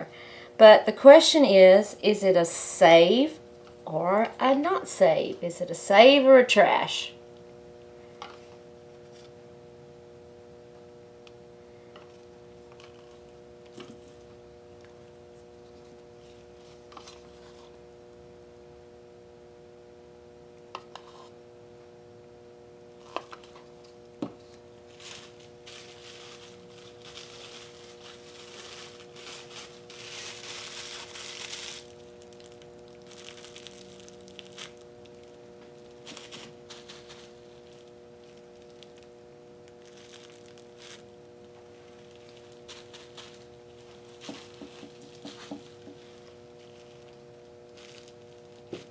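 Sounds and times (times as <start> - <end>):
steady hum: 0.0 - 48.9
bubble wrap crinkling: 12.1 - 14.2, 23.0 - 48.9.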